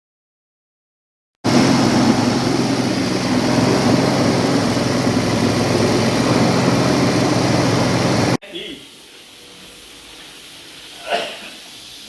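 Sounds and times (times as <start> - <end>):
grating machine motor hum: 1.5 - 8.4.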